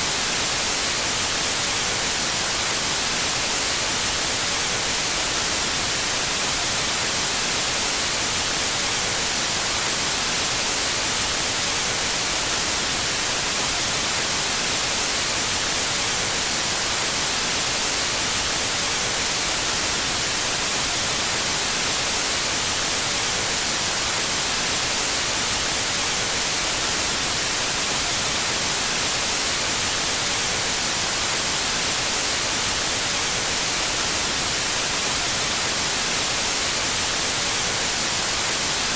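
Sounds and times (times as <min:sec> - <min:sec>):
static hiss: 0:00.0 - 0:38.9.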